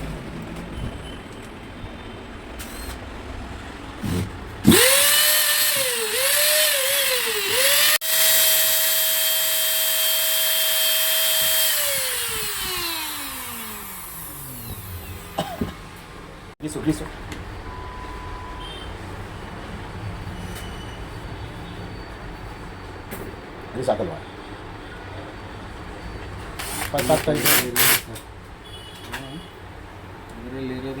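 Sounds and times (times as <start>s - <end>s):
angle grinder motor whine: 4.7s - 15.4s.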